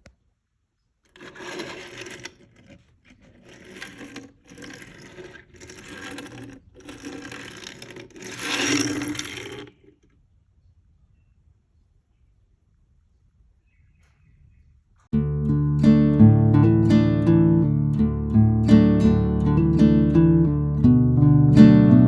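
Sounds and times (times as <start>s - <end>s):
pencil scratching on paper: 1.1s - 9.7s.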